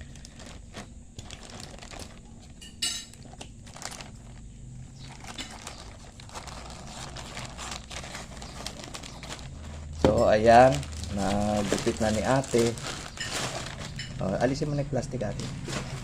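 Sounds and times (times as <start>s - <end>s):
plastic crinkling: 0.0s - 16.0s
scissors cutting plastic: 5.0s - 14.6s.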